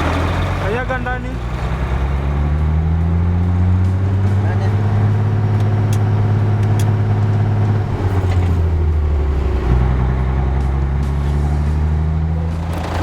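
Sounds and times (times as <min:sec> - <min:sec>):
vehicle engine revving: 0:00.0 - 0:13.0.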